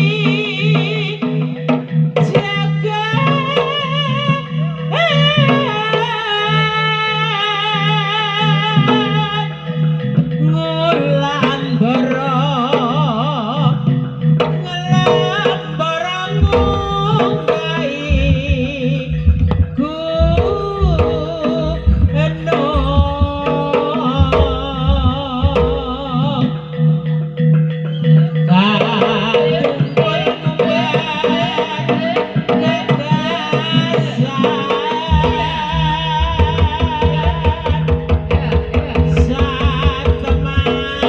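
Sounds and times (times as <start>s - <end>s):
rapid hand-drum strokes: 8.5s - 26.8s, 28.5s - 41.0s.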